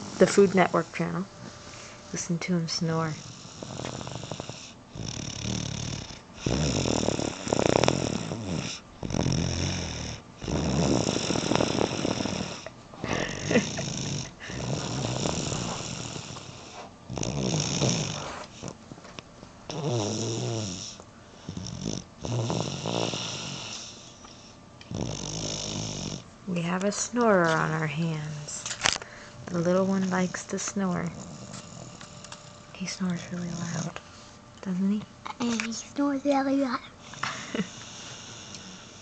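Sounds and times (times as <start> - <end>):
boy snoring loudly: 3.0 - 18.8, 19.7 - 24.0, 24.9 - 26.2, 37.1 - 39.0.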